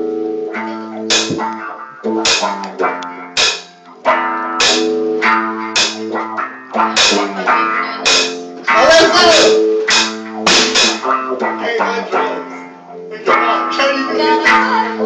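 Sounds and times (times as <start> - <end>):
held guitar chords: 0.0 - 15.0
drum and cymbal hits: 1.1 - 1.5, 2.2 - 2.6, 3.4 - 3.8, 4.6 - 5.0, 5.7 - 6.2, 6.9 - 7.4, 8.0 - 8.4, 9.4 - 11.1.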